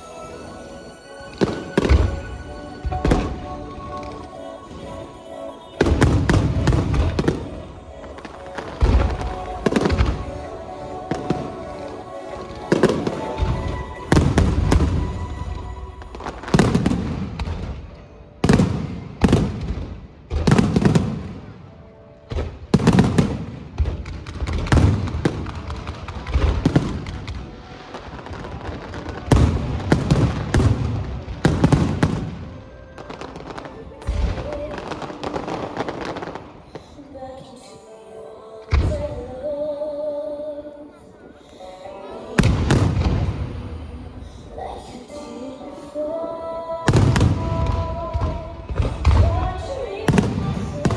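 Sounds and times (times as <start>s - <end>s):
fireworks booming: 1.4s - 4.2s, 5.8s - 10.5s, 12.6s - 21.6s, 22.3s - 36.6s, 42.4s - 43.8s, 46.9s - 50.9s
crackling rumbling echo: 5.8s - 37.0s.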